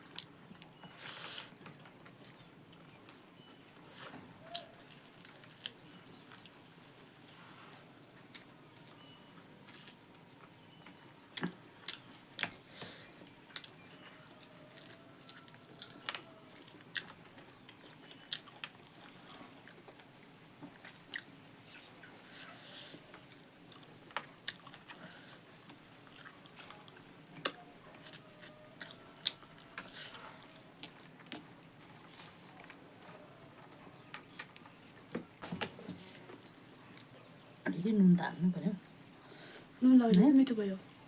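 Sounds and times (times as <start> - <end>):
wet chewing sounds: 3.8 - 6.6, 8.3 - 10.0, 11.2 - 37.7.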